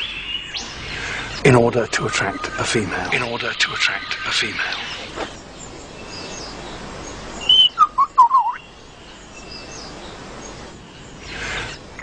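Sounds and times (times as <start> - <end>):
lyrebird whistled notes: 7.4 - 8.7.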